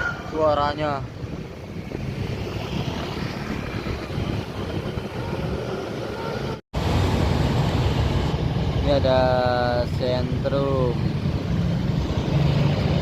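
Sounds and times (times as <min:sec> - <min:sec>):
wind on microphone: 0:00.0 - 0:08.9.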